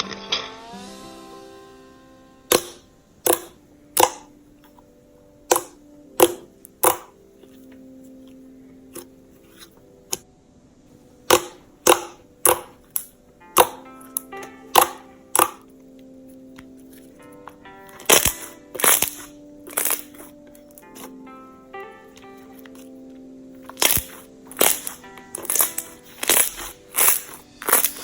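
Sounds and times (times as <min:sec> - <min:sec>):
faint background music: 0:00.0 - 0:28.0
slime popping clicks: 0:02.5 - 0:04.3, 0:14.7 - 0:15.6, 0:18.0 - 0:20.3, 0:23.6 - 0:28.0.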